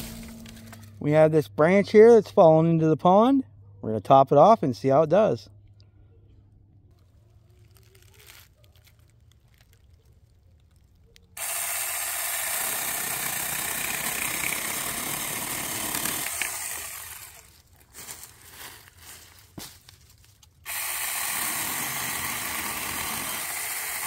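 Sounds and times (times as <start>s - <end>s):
electric chainsaw cutting branch: 0.0s - 0.8s, 11.4s - 17.5s, 20.6s - 24.0s.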